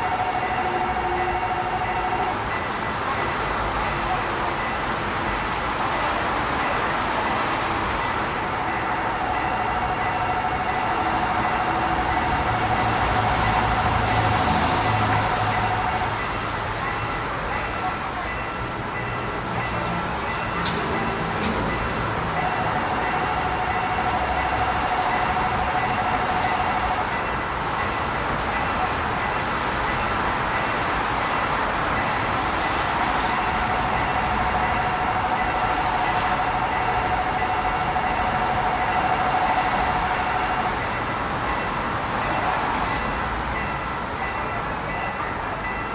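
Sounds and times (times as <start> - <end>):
level crossing bell ringing: 0.0 - 5.0, 6.6 - 45.9
approaching train rumble: 0.0 - 45.9
steady high tone: 0.0 - 45.9
traffic noise: 0.0 - 45.9.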